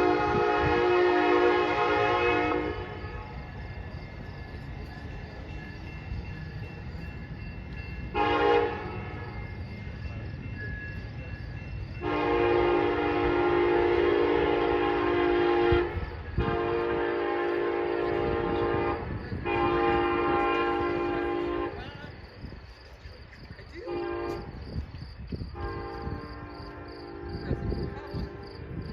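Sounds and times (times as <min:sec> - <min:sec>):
locomotive horn blasts: 0:00.0 - 0:03.4, 0:08.1 - 0:09.3, 0:12.0 - 0:21.9, 0:23.8 - 0:24.6, 0:25.5 - 0:28.8
train rumbling: 0:00.0 - 0:28.9.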